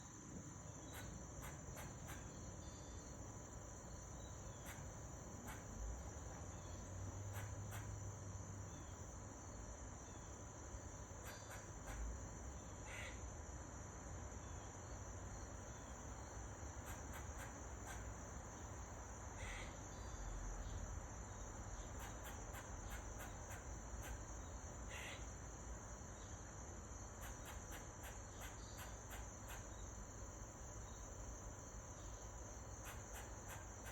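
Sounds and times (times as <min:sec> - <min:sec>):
high-pitched insect chorus: 0:00.0 - 0:33.9
squirrel calling: 0:00.8 - 0:03.2, 0:04.1 - 0:08.0, 0:11.2 - 0:12.1, 0:12.9 - 0:13.2, 0:16.8 - 0:18.7, 0:19.4 - 0:20.2, 0:21.8 - 0:25.4, 0:27.2 - 0:31.1, 0:32.0 - 0:33.9.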